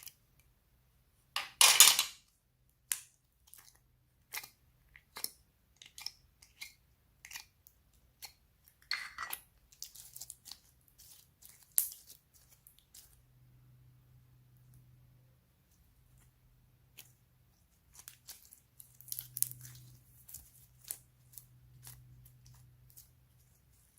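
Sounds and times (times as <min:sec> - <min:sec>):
slime clicking and crackling: 0:09.7 - 0:13.2, 0:17.8 - 0:23.9.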